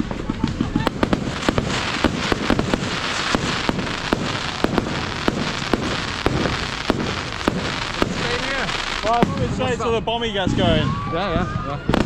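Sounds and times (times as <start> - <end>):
fireworks crackling and hissing: 0.0 - 12.0
fireworks sharp bangs: 0.5 - 10.0.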